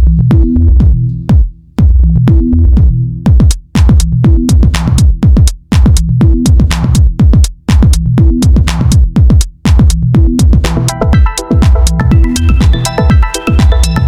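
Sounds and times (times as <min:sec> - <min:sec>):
booming kick drums: 0:00.0 - 0:14.0
electronic dance music: 0:02.3 - 0:14.0
hi-hat and clap strokes: 0:03.3 - 0:14.0.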